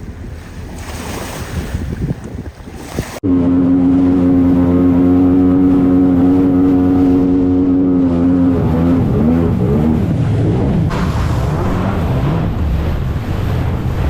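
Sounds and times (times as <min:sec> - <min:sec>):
jet ski engine running: 0:03.2 - 0:14.0.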